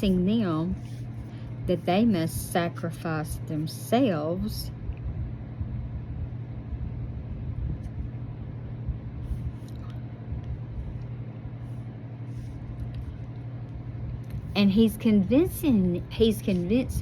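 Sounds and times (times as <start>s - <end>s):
droning hum: 0.0s - 17.0s
low rumble: 4.4s - 17.0s.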